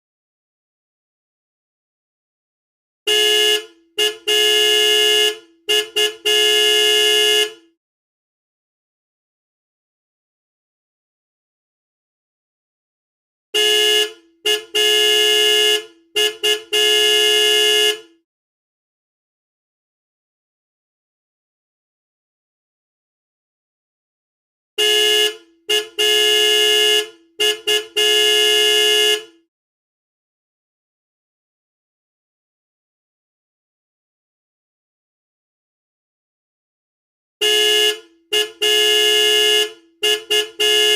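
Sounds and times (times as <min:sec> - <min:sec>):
car horn honking: 0:03.1 - 0:07.7, 0:13.6 - 0:18.2, 0:24.8 - 0:29.4, 0:37.4 - 0:40.9.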